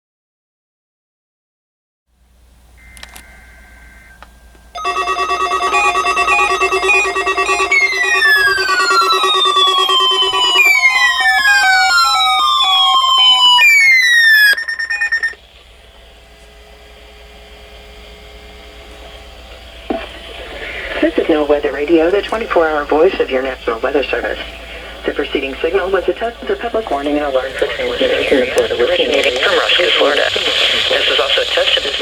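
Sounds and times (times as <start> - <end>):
electronic beeping jingle: 4.8 - 15.4
faint radio hiss: 19.0 - 32.0.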